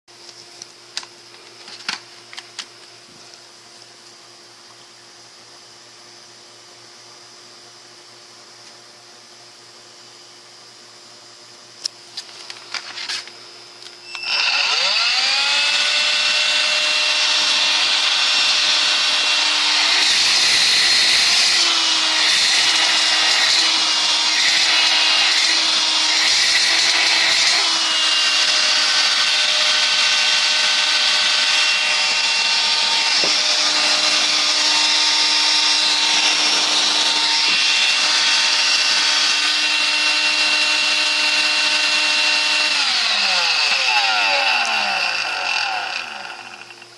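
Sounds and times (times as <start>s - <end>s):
cordless vacuum motor whine: 12.5s - 46.8s.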